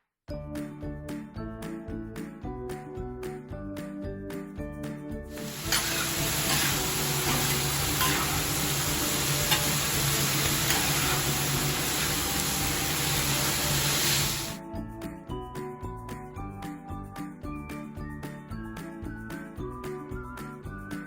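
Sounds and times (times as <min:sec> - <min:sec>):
steady sizzling hiss: 0:05.3 - 0:14.6.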